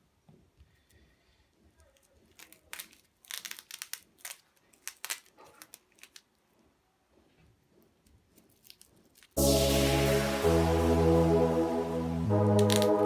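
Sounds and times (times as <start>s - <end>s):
plastic crinkling: 1.8s - 6.6s, 8.2s - 9.4s.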